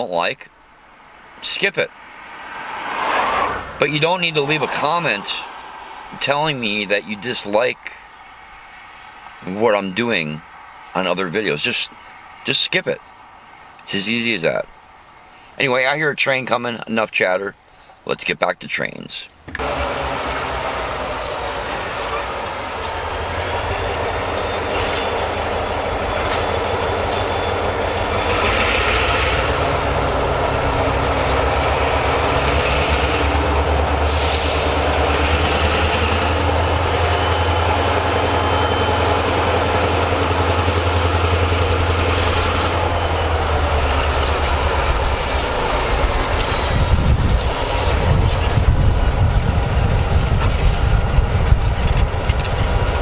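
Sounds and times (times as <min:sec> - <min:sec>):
locomotive engine drone: 0:00.0 - 0:16.6, 0:19.4 - 0:53.0
high-pitched gliding whine: 0:00.6 - 0:16.0, 0:19.6 - 0:53.0
wheels clattering over rail joints: 0:19.5 - 0:48.8.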